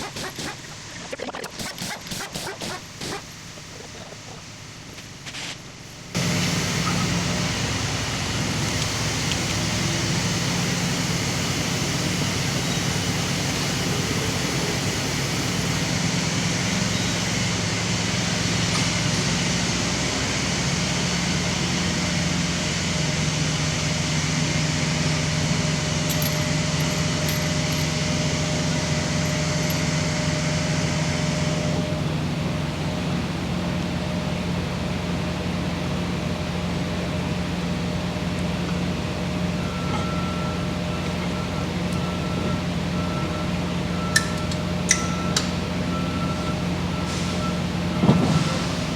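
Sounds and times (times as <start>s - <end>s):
broad hiss: 4.8s - 19.1s
engine running: 5.8s - 48.9s.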